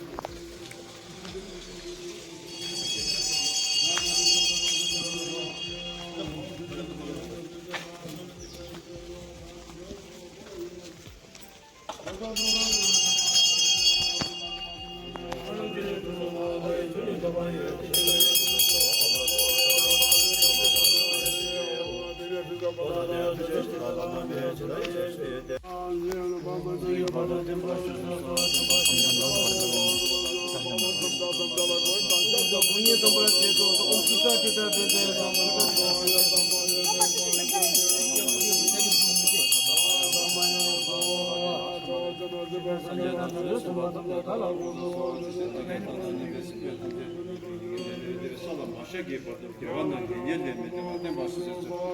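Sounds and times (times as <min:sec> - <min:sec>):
small bells jingling: 0:00.0 - 0:10.7, 0:12.2 - 0:24.8, 0:27.3 - 0:46.6, 0:47.2 - 0:49.2
mantra chanting: 0:00.0 - 0:11.3, 0:12.0 - 0:51.9
music with sustained tones: 0:00.0 - 0:49.0
high ringing tone: 0:02.3 - 0:07.4, 0:12.4 - 0:17.2, 0:17.8 - 0:23.8, 0:28.4 - 0:44.0.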